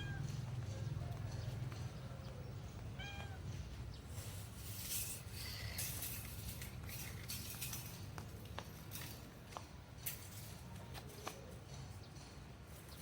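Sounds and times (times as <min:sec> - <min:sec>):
rustling and swishing: 0:04.1 - 0:09.4.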